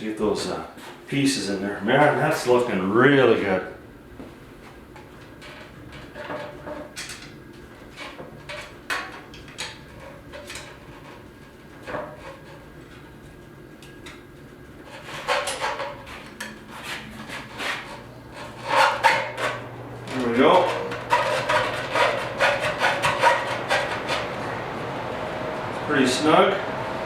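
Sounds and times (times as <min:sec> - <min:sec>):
screwdriver knocking and scraping metal: 0:14.9 - 0:24.2.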